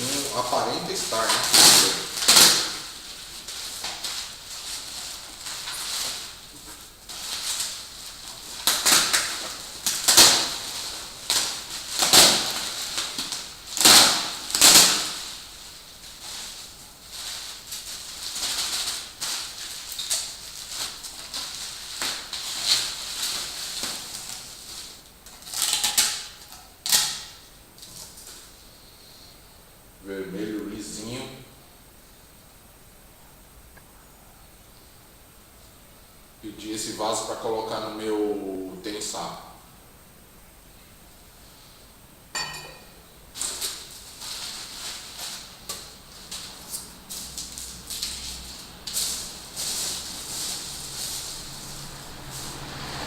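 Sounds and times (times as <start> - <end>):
packing wrap rustling and crinkling: 0.0 - 28.6, 43.3 - 53.0.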